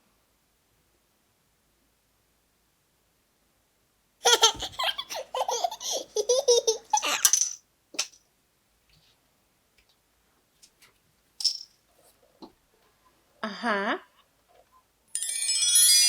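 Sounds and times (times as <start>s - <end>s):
small child giggling: 4.2s - 7.4s.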